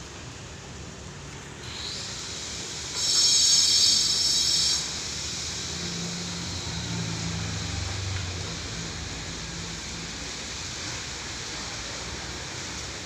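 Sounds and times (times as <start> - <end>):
sliding gate motor running: 1.6 - 12.8
high-pitched metallic squeal: 2.2 - 9.8.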